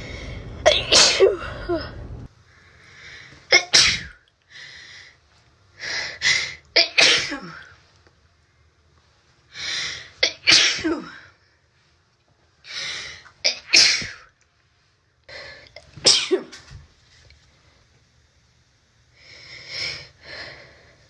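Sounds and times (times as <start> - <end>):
person sneezing: 0.7 - 1.9, 3.5 - 4.2, 6.8 - 7.7, 10.2 - 11.2, 13.5 - 14.3.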